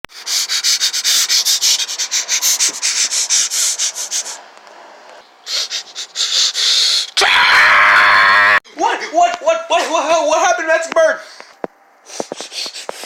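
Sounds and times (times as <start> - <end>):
scratchy rubbing strokes: 0.1 - 6.5.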